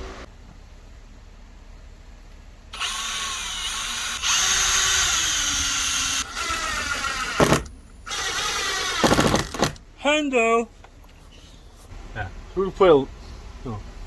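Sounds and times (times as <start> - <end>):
power drill running: 2.8 - 9.8.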